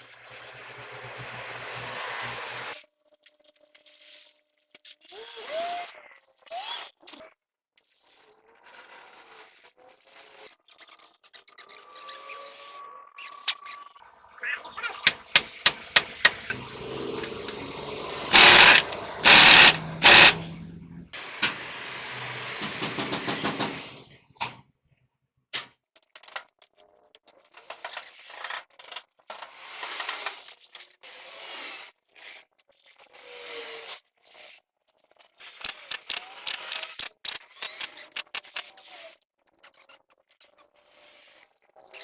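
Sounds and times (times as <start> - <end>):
sharp metal clicks: 15.1 - 16.6, 18.3 - 20.4, 35.6 - 38.7
metal scraping and rubbing: 18.3 - 20.5.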